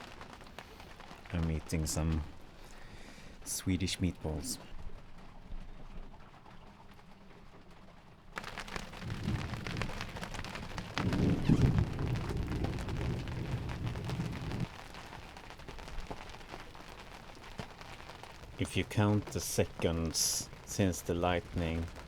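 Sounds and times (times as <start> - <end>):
rain spattering on boat: 0.0 - 22.0
thunder rumbling: 8.4 - 22.0.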